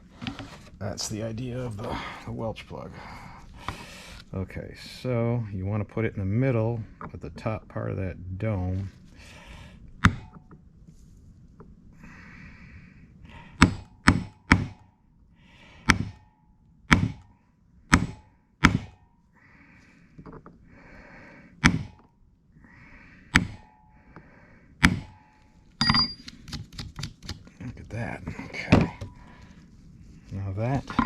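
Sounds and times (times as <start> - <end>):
hammer tapping on metal punch: 15.9 - 16.2, 17.9 - 19.0, 23.4 - 23.7, 24.8 - 25.2, 25.8 - 26.3.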